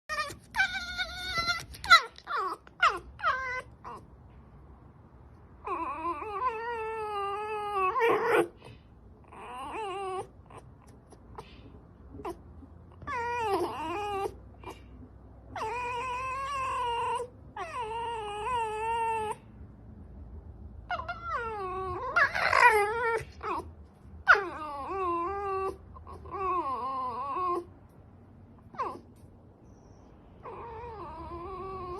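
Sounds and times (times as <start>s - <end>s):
fox crying: 0.0s - 4.1s, 12.1s - 14.9s, 15.5s - 19.4s, 20.9s - 27.7s, 30.4s - 31.9s.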